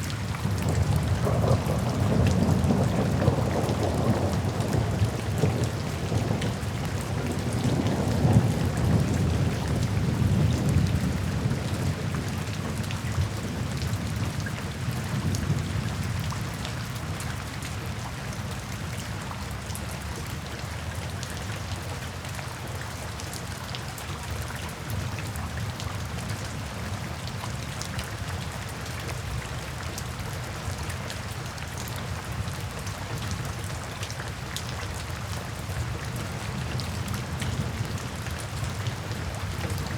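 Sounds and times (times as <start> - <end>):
steady rain falling: 0.0 - 39.9
thunder rumbling: 0.2 - 12.2.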